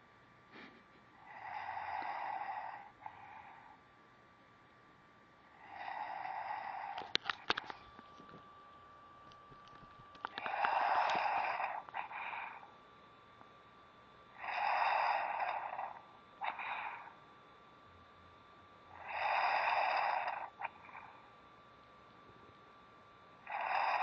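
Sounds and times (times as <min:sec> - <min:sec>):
loud rattling snores: 0:01.2 - 0:03.8, 0:05.5 - 0:07.2, 0:10.3 - 0:12.7, 0:14.4 - 0:17.2, 0:18.9 - 0:21.2, 0:23.4 - 0:24.0.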